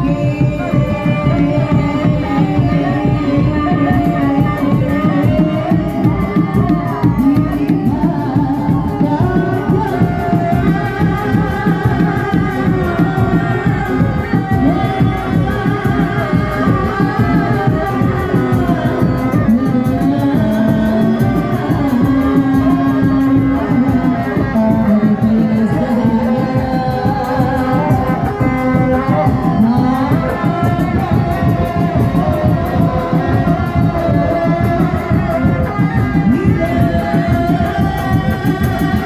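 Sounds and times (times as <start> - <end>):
driving drum beat: 0.0 - 39.0
person singing long notes: 0.0 - 39.0.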